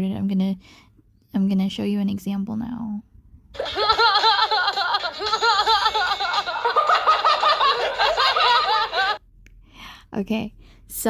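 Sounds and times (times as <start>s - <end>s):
men giggling: 3.6s - 9.2s.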